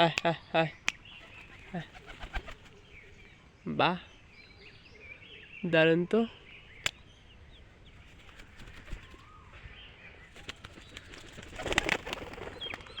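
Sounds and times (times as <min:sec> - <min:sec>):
faint bird chirps: 0:00.2 - 0:13.0
pigeon wings flapping: 0:01.2 - 0:02.8, 0:08.0 - 0:09.3, 0:10.4 - 0:13.0.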